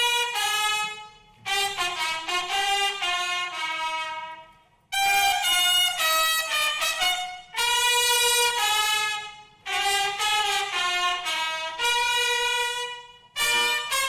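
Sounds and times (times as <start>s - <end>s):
trumpet-like wind instrument: 0.0s - 14.0s.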